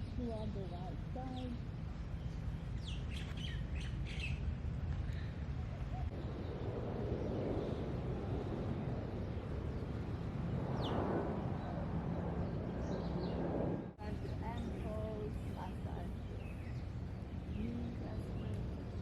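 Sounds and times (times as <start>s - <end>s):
bird chirping: 0.0s - 4.5s, 14.0s - 19.0s
steady low rumble: 0.0s - 19.0s.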